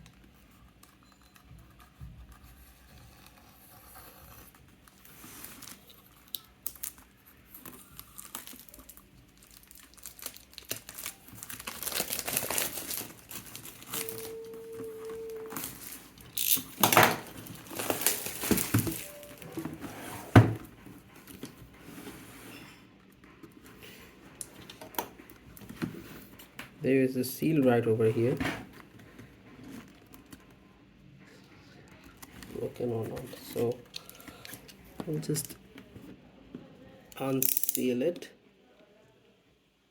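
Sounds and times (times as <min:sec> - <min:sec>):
packaging crinkling and rustling: 0:00.0 - 0:19.9.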